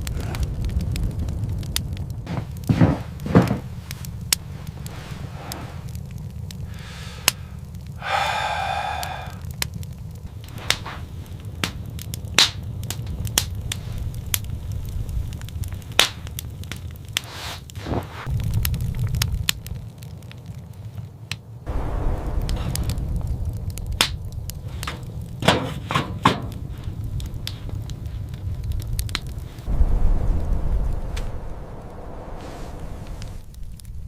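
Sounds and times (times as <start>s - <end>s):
steady low rumble: 0.0s - 17.0s, 18.2s - 20.2s, 21.5s - 25.5s, 26.4s - 34.0s
fire crackling and popping: 0.0s - 34.0s.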